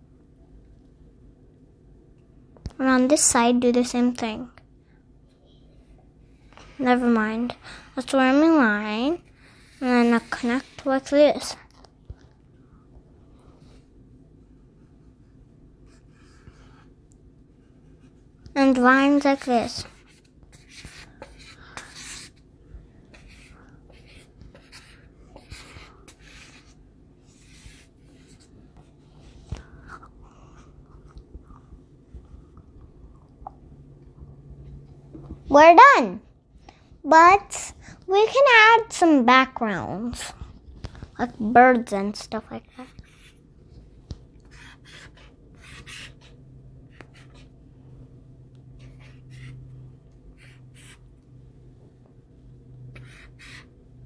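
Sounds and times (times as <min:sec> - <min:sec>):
low steady hum: 0:00.0 - 0:54.0
pencil scratching on paper: 0:09.0 - 0:11.2, 0:15.8 - 0:16.9, 0:17.6 - 0:18.3, 0:19.0 - 0:22.4, 0:23.1 - 0:28.5, 0:42.6 - 0:43.4, 0:44.5 - 0:47.5, 0:48.8 - 0:49.7, 0:50.4 - 0:51.1, 0:52.9 - 0:53.7.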